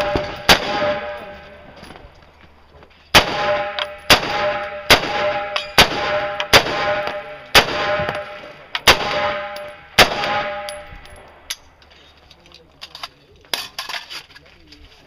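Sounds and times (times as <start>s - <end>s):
rifle shots: 0.0s - 1.7s, 3.1s - 11.4s.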